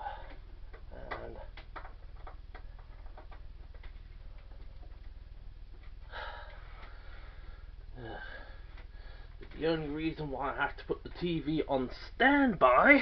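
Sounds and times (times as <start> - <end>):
low electrical hum: 0.0 - 13.0
person breathing: 6.0 - 9.5.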